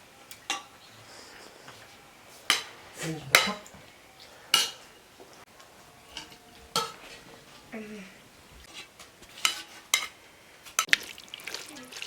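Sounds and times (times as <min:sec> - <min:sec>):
metal utensil clinking on pot: 0:00.3 - 0:00.7, 0:02.5 - 0:03.8, 0:04.5 - 0:04.9, 0:06.0 - 0:07.6, 0:08.7 - 0:10.2.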